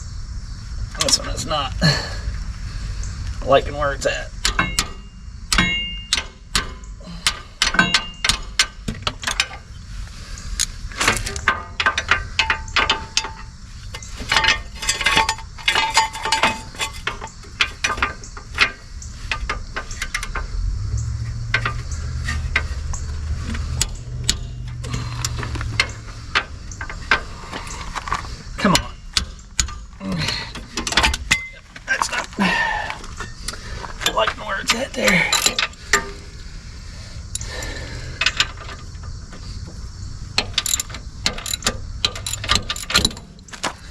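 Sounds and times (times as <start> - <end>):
low steady hum: 0.0 - 43.9
ratchet clicking and clanking: 2.8 - 43.9.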